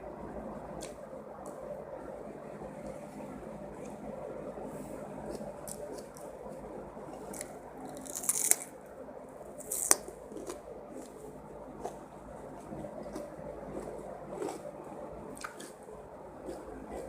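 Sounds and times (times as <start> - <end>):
person chewing wetly: 5.2 - 8.7, 9.6 - 17.0.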